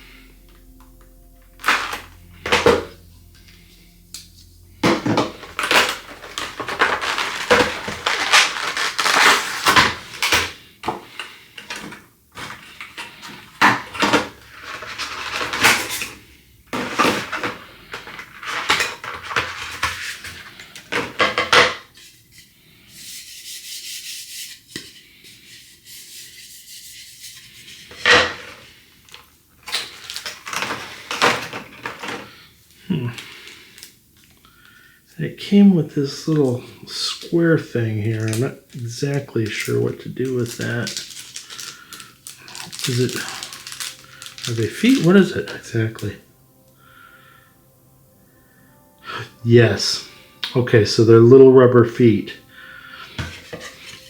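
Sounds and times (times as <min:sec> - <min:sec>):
packaging scraping and rustling: 0:01.6 - 0:22.5, 0:27.4 - 0:34.3, 0:36.0 - 0:46.2, 0:53.0 - 0:54.0.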